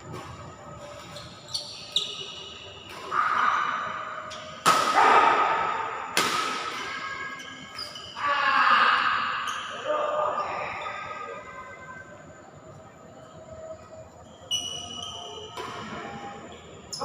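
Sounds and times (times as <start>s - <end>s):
racket hitting shuttlecock: 4.6s - 5.4s, 6.1s - 7.0s.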